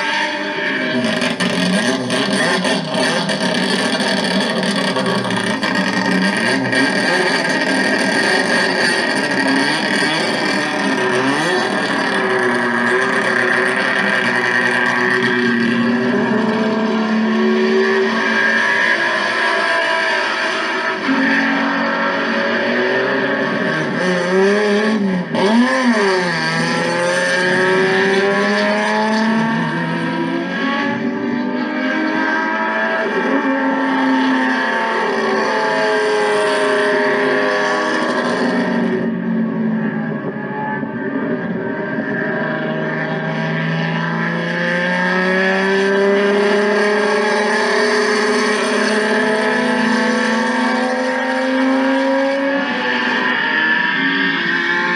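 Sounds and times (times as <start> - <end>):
race car engine revving: 0.0 - 54.9.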